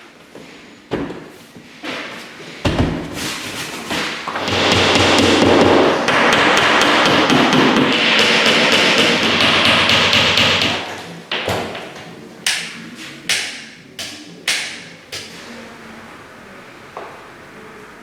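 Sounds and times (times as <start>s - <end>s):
hammer tapping: 4.4s - 11.4s, 12.4s - 15.3s.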